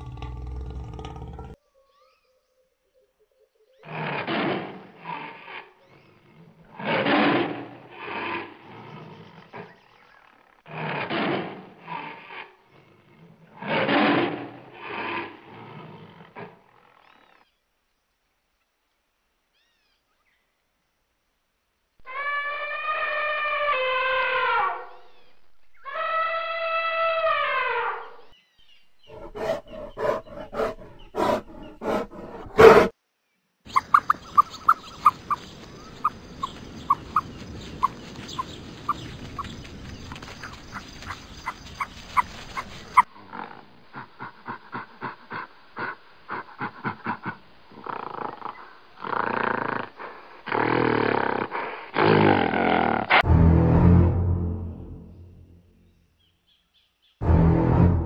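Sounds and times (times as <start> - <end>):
animal roaring: 0.0 - 1.6, 29.0 - 32.9
long high animal call: 22.0 - 25.1, 25.8 - 28.3, 29.0 - 32.9, 33.7 - 43.6.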